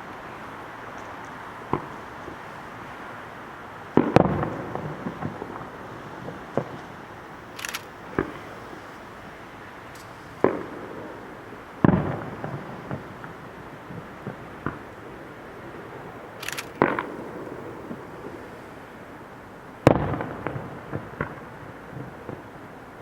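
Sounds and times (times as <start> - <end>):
firework crackling bursts: 0.0 - 23.0
firework booms echoing: 4.0 - 7.2, 8.0 - 8.9, 10.4 - 15.0, 16.2 - 18.5, 19.8 - 22.5.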